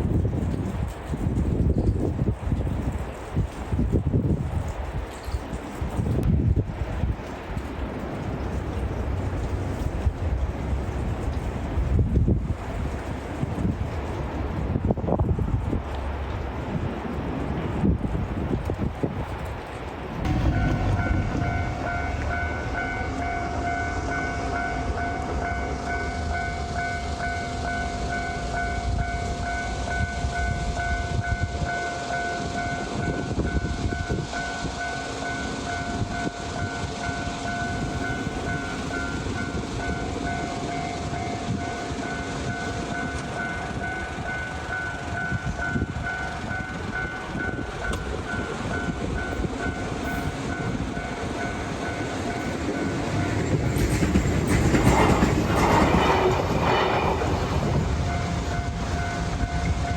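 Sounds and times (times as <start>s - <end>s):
train running on rails: 0.0s - 59.9s
level-crossing warning bell: 20.3s - 59.9s.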